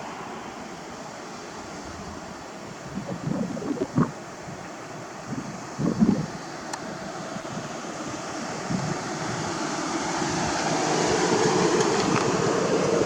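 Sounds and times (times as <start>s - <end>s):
wind buffeting microphone: 0.0s - 13.0s
car approaching: 7.0s - 13.0s.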